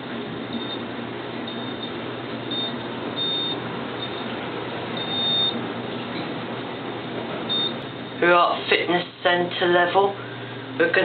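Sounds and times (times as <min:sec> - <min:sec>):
elevator car humming: 0:00.0 - 0:11.0
high electronic beep: 0:01.5 - 0:01.9, 0:02.5 - 0:04.3, 0:05.0 - 0:05.6, 0:07.5 - 0:07.8.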